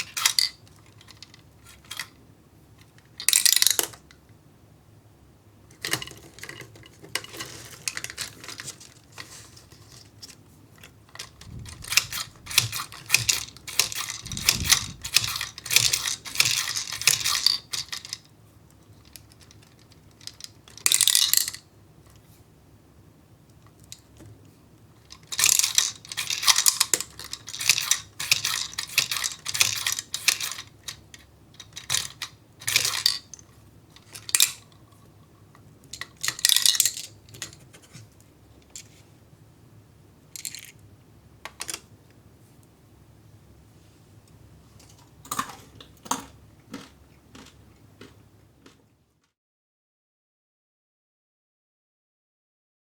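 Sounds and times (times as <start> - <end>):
hard candies clicking on plastic: 11.2 - 18.3, 25.0 - 33.4, 45.2 - 48.8.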